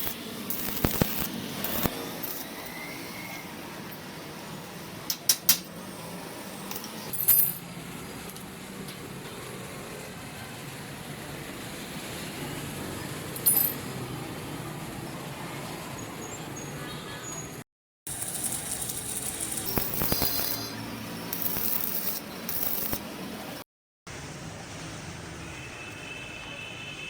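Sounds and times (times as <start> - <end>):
hiss: 0.0 - 1.9, 18.1 - 23.0
workshop background noise: 0.0 - 25.0
sharp metallic clinks: 18.1 - 23.0.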